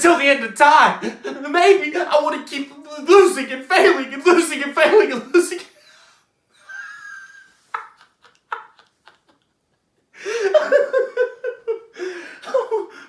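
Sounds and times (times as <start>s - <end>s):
man crying out: 0.0s - 5.7s.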